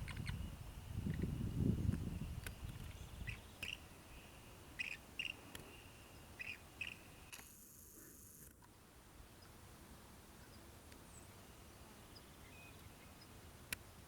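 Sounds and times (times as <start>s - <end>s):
bird chirping: 2.1s - 7.3s.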